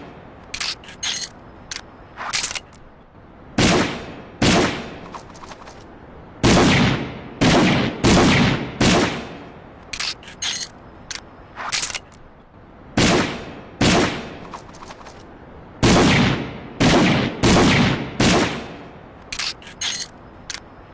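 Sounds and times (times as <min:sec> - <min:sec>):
metallic clicks of gun action: 0:00.4 - 0:02.9, 0:09.8 - 0:12.3, 0:19.2 - 0:20.7.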